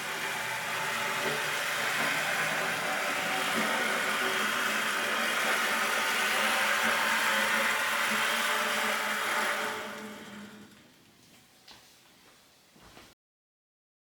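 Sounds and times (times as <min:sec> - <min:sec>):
electric motor whirring: 0:00.0 - 0:10.7.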